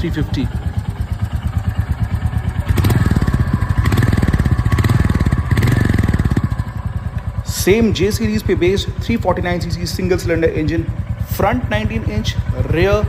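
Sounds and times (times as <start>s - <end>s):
motorcycle engine thumping: 0.0s - 13.0s.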